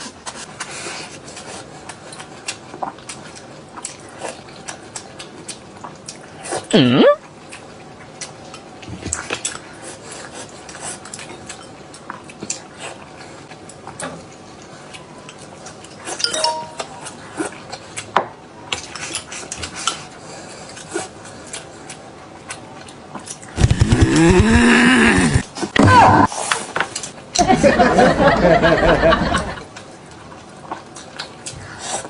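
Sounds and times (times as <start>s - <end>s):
utensils clinking against bowls: 16.2s - 17.2s.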